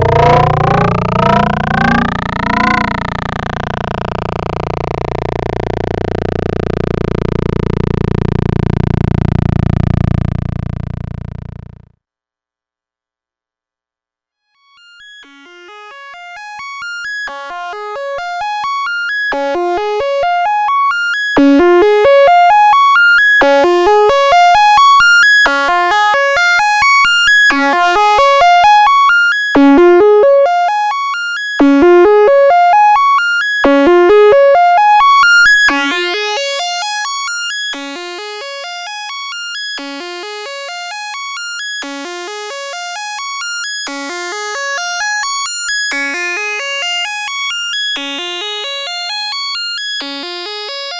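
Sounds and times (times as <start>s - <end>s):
synthesizer rising arpeggios: 0.0s - 11.9s, 14.6s - 39.7s, 43.0s - 50.9s.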